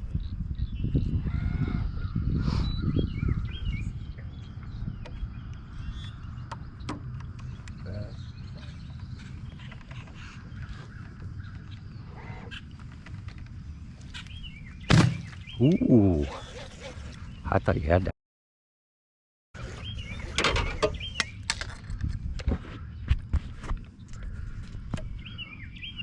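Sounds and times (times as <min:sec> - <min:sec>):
birds calling: 0:00.2 - 0:18.1, 0:19.6 - 0:26.0.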